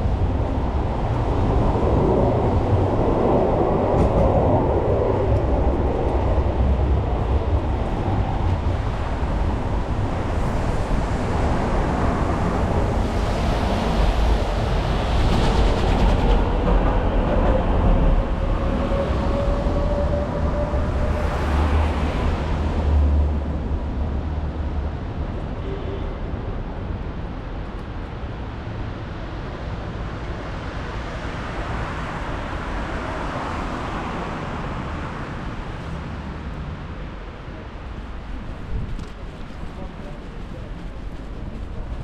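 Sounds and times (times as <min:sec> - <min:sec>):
street traffic noise: 0:00.0 - 0:42.0.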